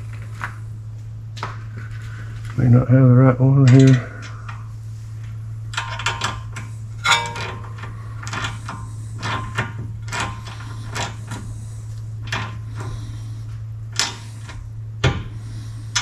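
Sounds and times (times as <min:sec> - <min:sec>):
steady low hum: 0:00.0 - 0:16.0
metal tools clinking and rattling: 0:07.0 - 0:08.5.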